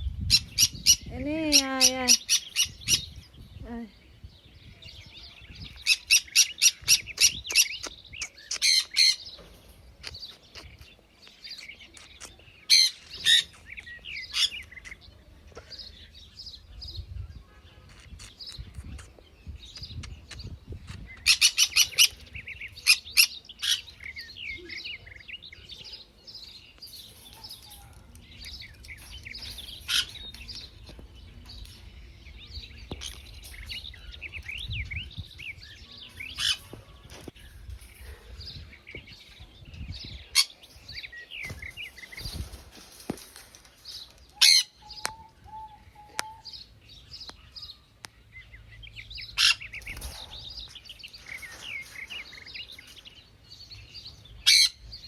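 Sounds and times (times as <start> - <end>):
parrots chattering and chirping: 0.3 - 3.4, 5.6 - 16.0, 17.7 - 24.7, 26.8 - 47.4, 48.9 - 55.0.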